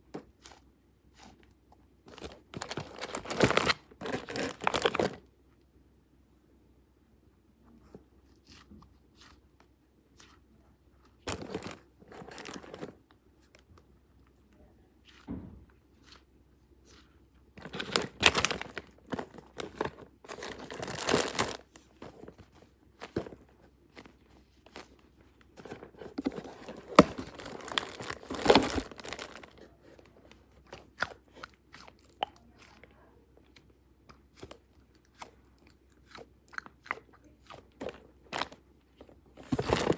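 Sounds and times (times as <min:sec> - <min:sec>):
crunching and crackling: 0:02.1 - 0:05.2, 0:11.2 - 0:13.8, 0:16.9 - 0:39.9.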